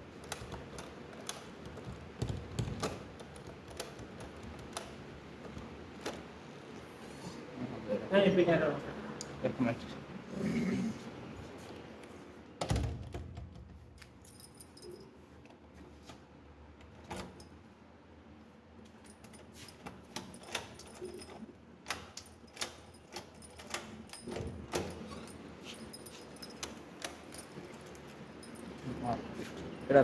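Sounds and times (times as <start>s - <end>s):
keys jingling and clicking: 0.0s - 6.5s, 13.6s - 15.5s, 17.0s - 17.7s, 18.8s - 30.0s.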